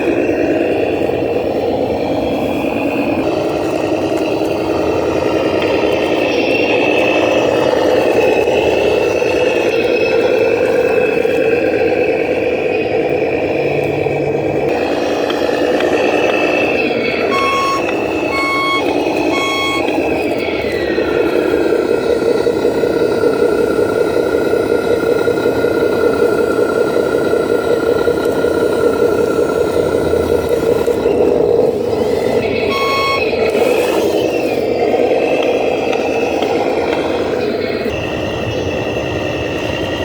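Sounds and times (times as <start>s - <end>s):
simulated diesel engine: 0.0s - 40.0s
reversing beeps: 17.2s - 20.4s, 32.7s - 34.0s.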